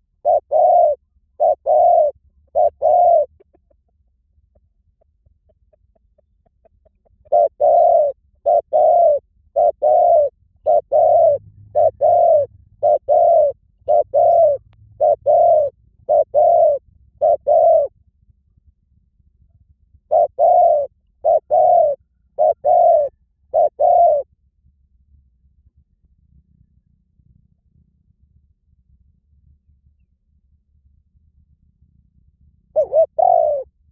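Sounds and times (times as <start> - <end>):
dove cooing: 0.0 - 18.0, 19.6 - 24.3, 32.7 - 33.8.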